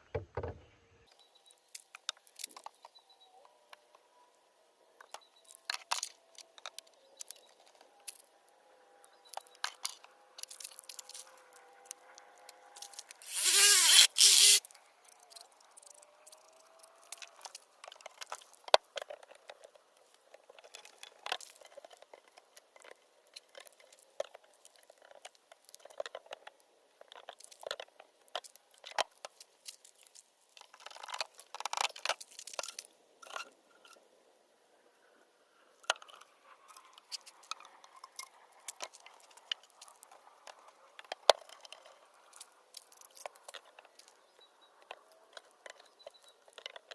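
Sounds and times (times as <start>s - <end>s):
loud scraping rasp: 13.2s - 14.6s.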